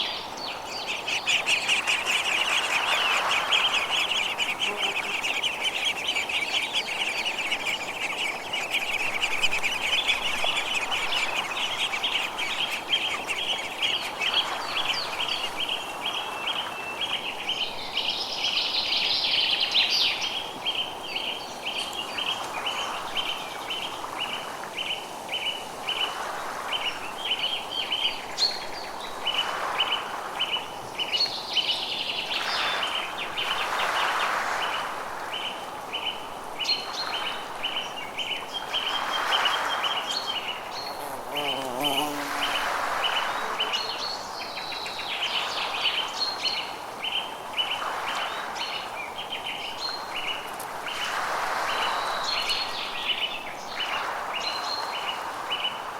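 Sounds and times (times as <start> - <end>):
other birds calling: 0.0 - 15.8, 40.6 - 44.2
soft hiss: 0.0 - 29.4, 31.3 - 55.2
bird high chirping: 0.5 - 14.4.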